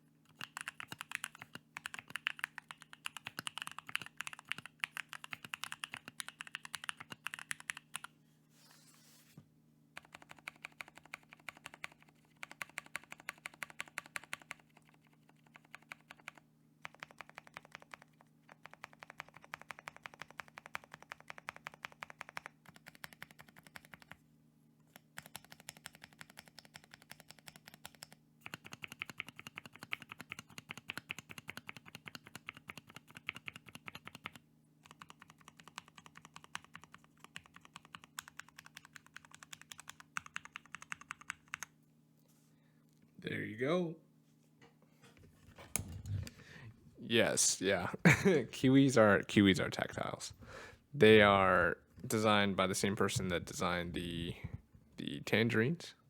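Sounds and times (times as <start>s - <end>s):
faint steady hum: 0.0s - 56.0s
mechanical keyboard typing: 0.3s - 8.1s, 10.0s - 24.2s, 24.9s - 41.7s.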